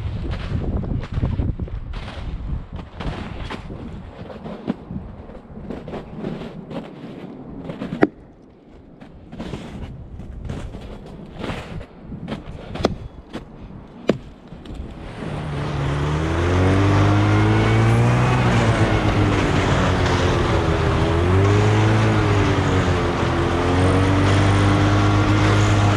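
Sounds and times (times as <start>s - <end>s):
small engine running: 15.0s - 25.9s.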